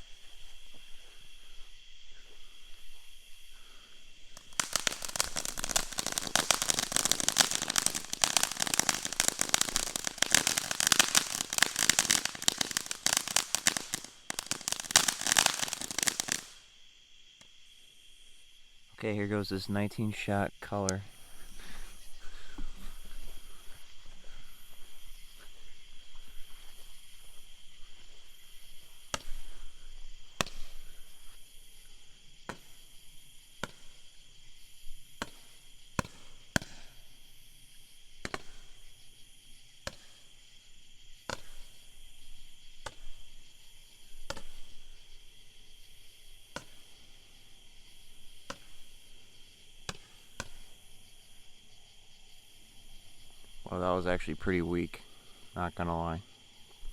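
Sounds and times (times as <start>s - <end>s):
firework pops: 4.3s - 16.6s, 29.0s - 29.6s, 30.3s - 30.9s, 33.5s - 34.1s, 35.1s - 37.0s, 38.2s - 38.9s, 39.8s - 40.4s, 41.2s - 42.0s, 42.8s - 45.0s, 46.4s - 47.3s, 48.0s - 50.9s.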